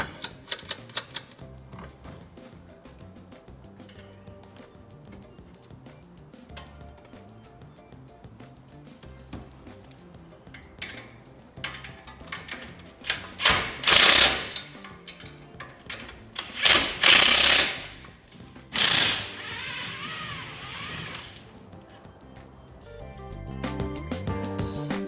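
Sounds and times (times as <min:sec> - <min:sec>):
background music: 0:00.0 - 0:25.0
power tool running: 0:13.1 - 0:14.8, 0:16.4 - 0:21.5.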